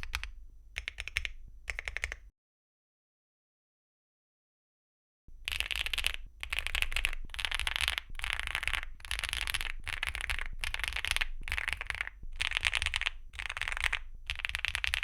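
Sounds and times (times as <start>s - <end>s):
mechanical keyboard clacking: 0.0s - 2.2s, 5.5s - 15.0s.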